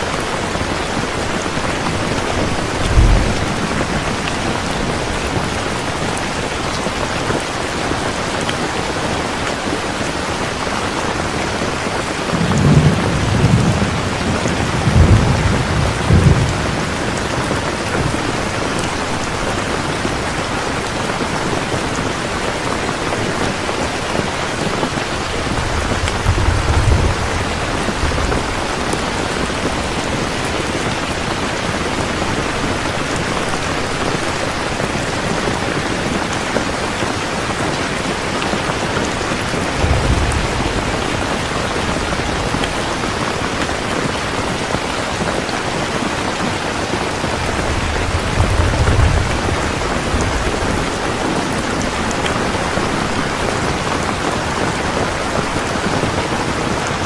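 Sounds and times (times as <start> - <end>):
heavy rain falling: 0.0 - 57.0
thunder rumbling: 0.2 - 7.0, 12.1 - 21.2, 24.2 - 34.3, 38.5 - 56.8.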